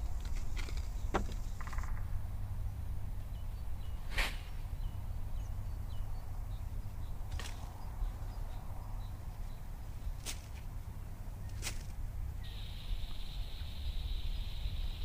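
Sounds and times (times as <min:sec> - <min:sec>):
faint bird chirps: 0:00.0 - 0:10.2, 0:12.3 - 0:15.0
low forest rumble: 0:00.0 - 0:15.0
brief sharp noises: 0:04.1 - 0:04.6.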